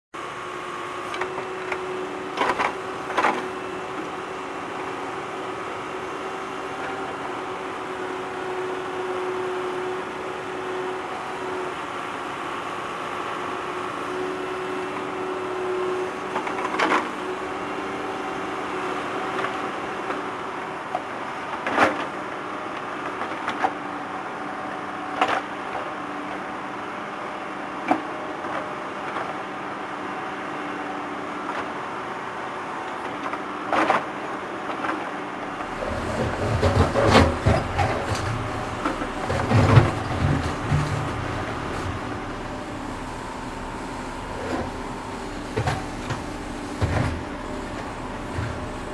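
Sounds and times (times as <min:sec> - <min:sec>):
tractor engine running: 0:00.3 - 0:20.5, 0:35.4 - 0:48.9
bucket digging ground: 0:35.6 - 0:43.3.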